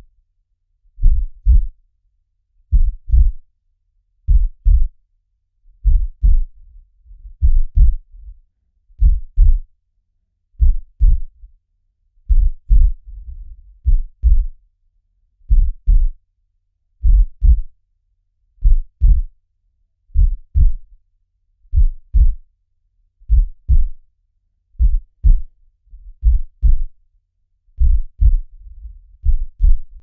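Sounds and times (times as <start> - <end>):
slow heartbeat thumps: 1.0 - 1.8, 2.7 - 3.4, 4.3 - 5.0, 5.8 - 8.4, 9.0 - 9.7, 10.6 - 11.4, 12.3 - 14.6, 15.5 - 16.2, 17.0 - 17.7, 18.6 - 19.3, 20.2 - 20.9, 21.7 - 22.4, 23.2 - 24.0, 24.8 - 27.0, 27.8 - 30.0.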